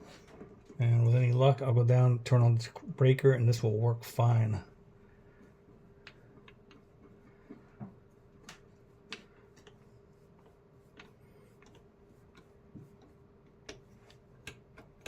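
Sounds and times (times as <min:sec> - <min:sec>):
faint steady hum: 0:00.0 - 0:15.0
light clicks and taps: 0:05.4 - 0:15.0.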